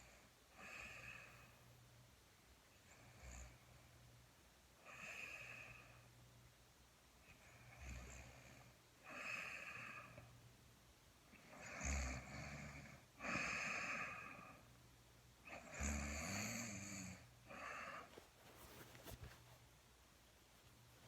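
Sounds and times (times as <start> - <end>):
man snoring: 11.5 - 14.6, 15.5 - 18.0.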